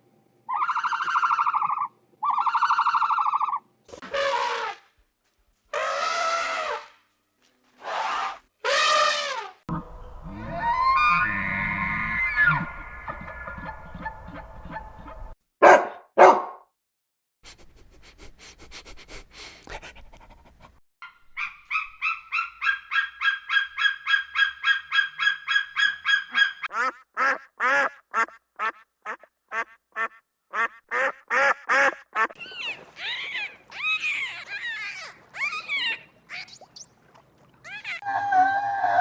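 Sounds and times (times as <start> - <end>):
geese honking: 9.7 - 15.4.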